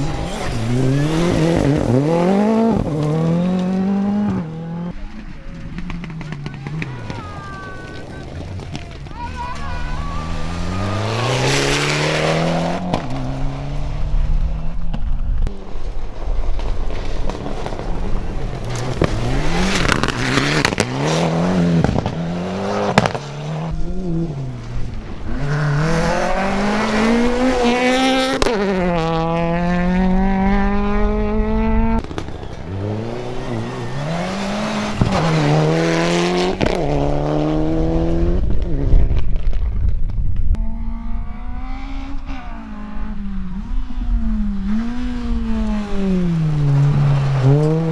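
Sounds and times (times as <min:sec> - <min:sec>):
rally car engines accelerating: 0:00.0 - 0:39.6, 0:40.5 - 0:47.9.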